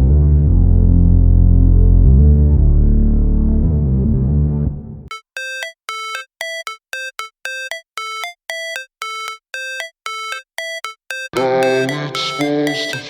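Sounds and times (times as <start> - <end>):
bright synthesizer notes: 5.1 - 13.0
music with bass line: 5.1 - 13.0.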